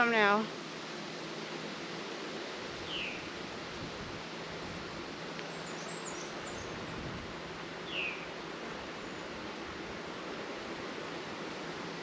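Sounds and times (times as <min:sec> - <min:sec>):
outdoor background hiss: 0:00.0 - 0:12.0
bird chirping: 0:02.9 - 0:03.3, 0:05.5 - 0:06.9, 0:07.8 - 0:08.3.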